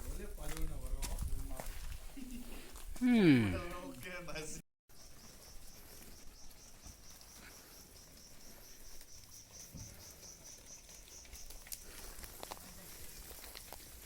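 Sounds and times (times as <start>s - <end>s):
insect pulsing chirp: 4.9s - 13.4s.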